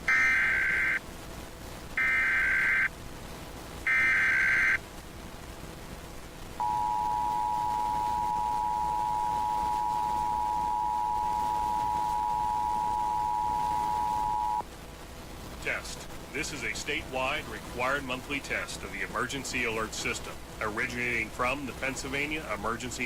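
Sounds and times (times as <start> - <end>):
screeching digital data tones: 0.0 - 1.0, 2.0 - 2.9, 3.9 - 4.8
two-tone attention signal: 3.9 - 4.8, 6.6 - 14.6.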